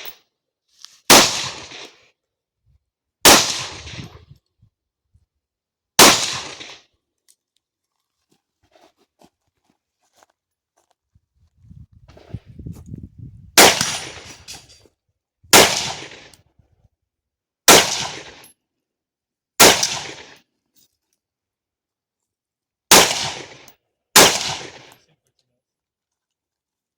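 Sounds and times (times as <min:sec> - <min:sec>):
carbine gunshots: 0:01.1 - 0:01.9, 0:03.2 - 0:04.2, 0:06.0 - 0:06.8, 0:13.6 - 0:14.4, 0:15.5 - 0:16.3, 0:17.7 - 0:18.4, 0:19.6 - 0:20.4, 0:22.9 - 0:23.6, 0:24.2 - 0:24.9.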